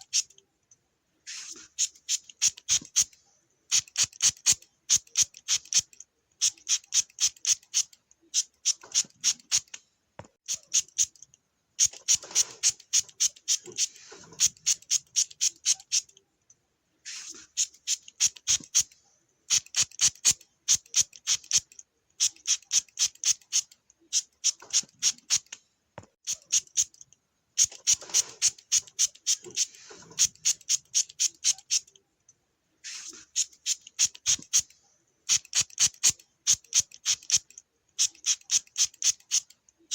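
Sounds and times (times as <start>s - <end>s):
spray bottle squirting: 1.3s - 3.1s, 3.7s - 9.8s, 11.8s - 16.0s, 17.1s - 18.9s, 19.5s - 25.6s, 27.6s - 31.9s, 32.8s - 34.7s, 35.3s - 39.5s.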